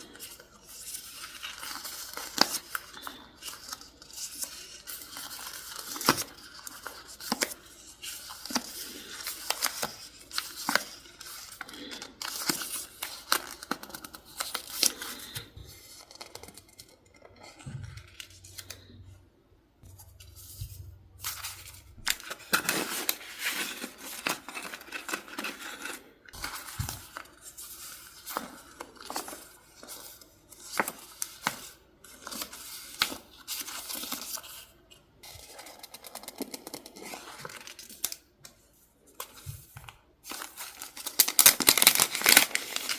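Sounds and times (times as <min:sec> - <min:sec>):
paper tearing and rustling: 0:40.3 - 0:42.9.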